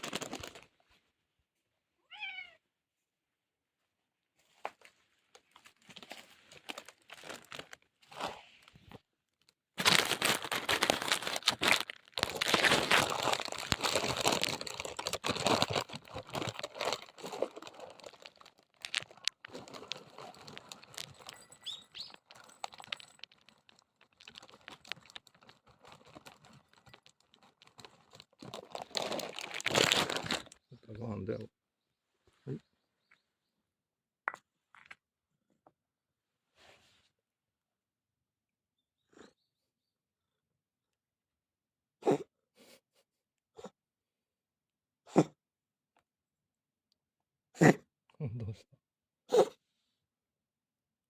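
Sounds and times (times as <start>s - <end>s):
packaging crinkling with clicks: 0.0s - 0.7s, 5.4s - 8.2s, 9.4s - 30.6s.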